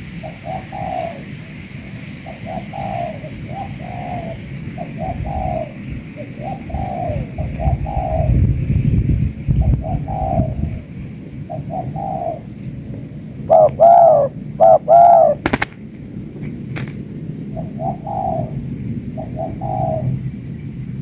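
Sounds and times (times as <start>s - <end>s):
doves cooing: 0.0s - 8.5s, 9.6s - 21.0s
sharp clicks: 15.4s - 15.8s.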